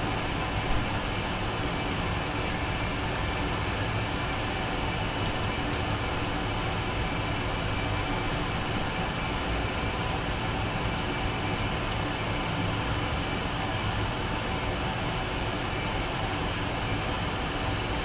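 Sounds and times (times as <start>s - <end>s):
background hum and hiss: 0.0s - 18.0s.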